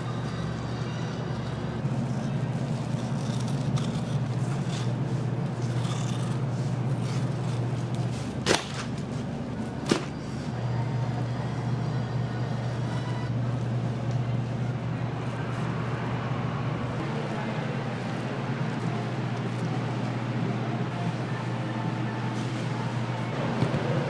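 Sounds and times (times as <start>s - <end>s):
scraping and clatter: 5.6s - 9.1s.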